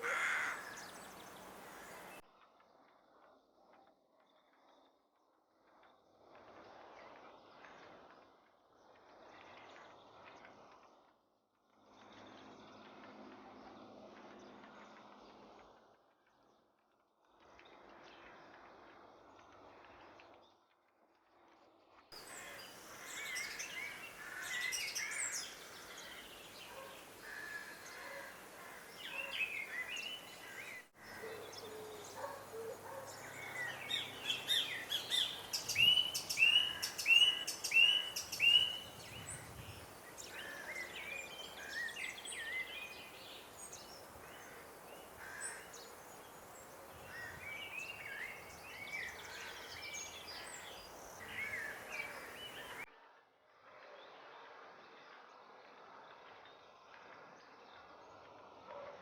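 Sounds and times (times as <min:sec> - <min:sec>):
faint background hiss: 0:22.2 - 0:52.9
small birds chirping: 0:22.2 - 0:52.9.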